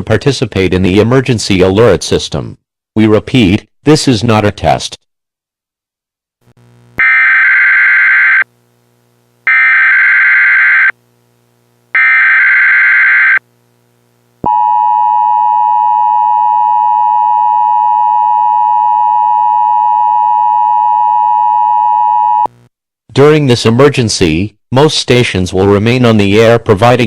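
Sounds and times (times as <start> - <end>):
digital data bursts: 7.0 - 8.4, 9.5 - 10.9, 12.0 - 13.4.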